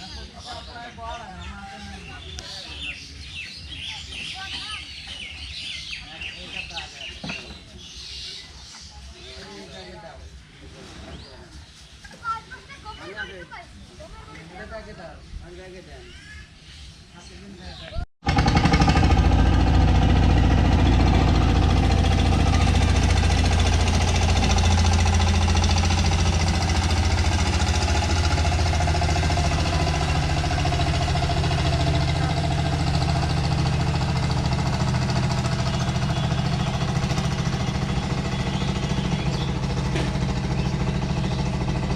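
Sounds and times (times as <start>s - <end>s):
engine running: 18.2s - 41.9s.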